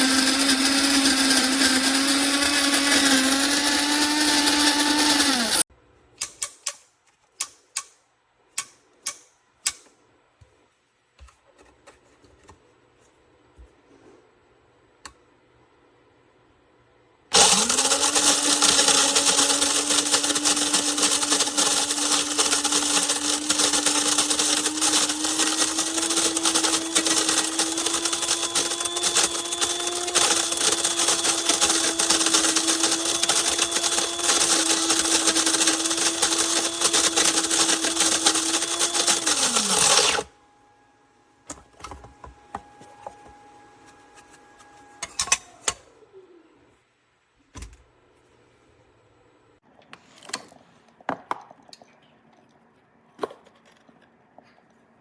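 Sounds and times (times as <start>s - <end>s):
coffee grinder whirring: 0.0s - 5.7s, 17.3s - 40.3s.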